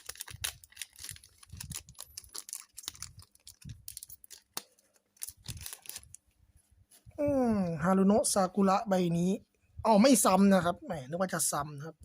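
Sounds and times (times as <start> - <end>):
foil pack tearing: 0.0 - 6.2
foil pack crinkling: 0.0 - 6.4.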